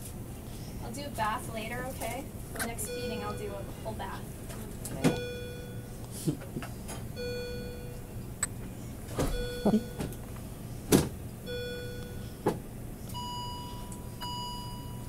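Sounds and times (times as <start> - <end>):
hospital monitor tones: 2.6 - 4.2, 4.9 - 6.0, 7.2 - 8.2, 9.3 - 10.2, 11.5 - 12.4, 13.1 - 15.0.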